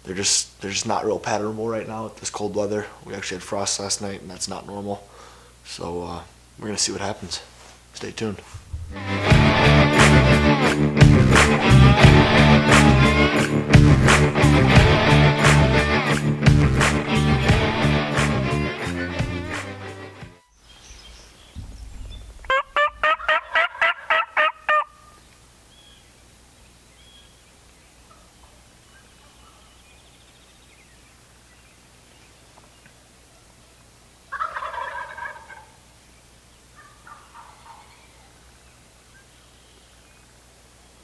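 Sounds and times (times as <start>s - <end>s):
wild turkey yelping: 20.7s - 26.1s, 27.0s - 29.9s, 34.3s - 35.8s, 36.8s - 40.2s.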